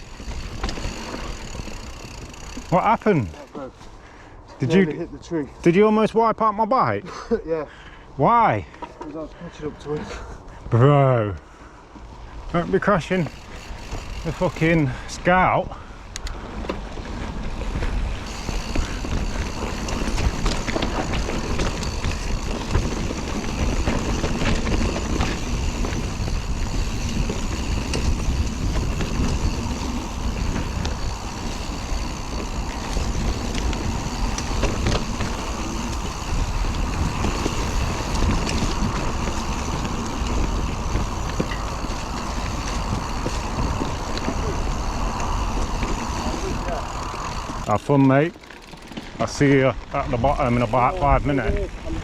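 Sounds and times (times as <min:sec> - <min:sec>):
bike clicks and rattles: 0:00.0 - 0:04.4, 0:11.3 - 0:52.0
tyres running over dirt: 0:00.0 - 0:05.0, 0:08.6 - 0:52.0
wind rumble on microphone: 0:16.2 - 0:47.7, 0:49.2 - 0:52.0.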